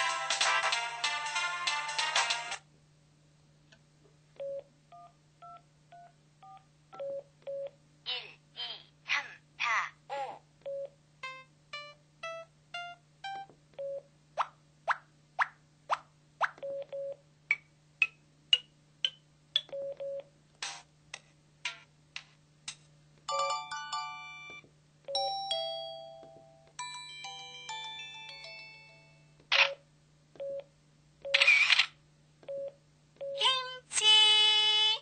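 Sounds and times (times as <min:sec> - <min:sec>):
faint steady hum: 0:00.0 - 0:35.0
chiming jingles: 0:26.8 - 0:29.3
phone clicks and blips: 0:29.5 - 0:29.8, 0:30.4 - 0:32.6.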